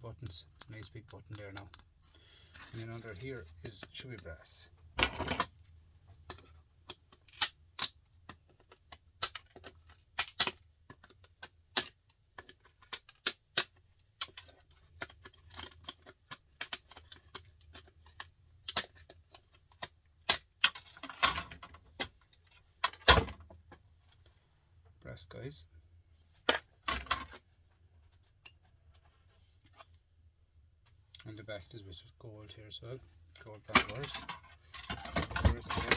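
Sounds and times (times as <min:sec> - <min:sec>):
plastic parts clicking and clacking: 0:00.1 - 0:05.6, 0:06.2 - 0:23.8, 0:26.4 - 0:27.5, 0:33.3 - 0:35.9.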